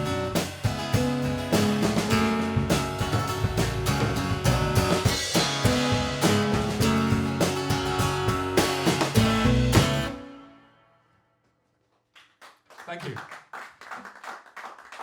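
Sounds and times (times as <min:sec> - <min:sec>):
drum kit beat: 0:00.0 - 0:10.2
guitar and bass notes: 0:00.0 - 0:10.7.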